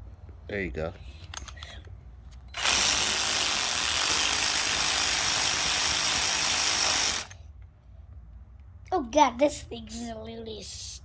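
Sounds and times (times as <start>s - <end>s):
power tool hissing: 2.6s - 7.3s.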